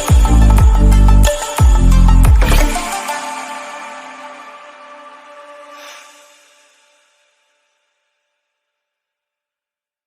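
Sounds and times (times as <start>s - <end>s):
electronic dance music: 0.0s - 3.6s.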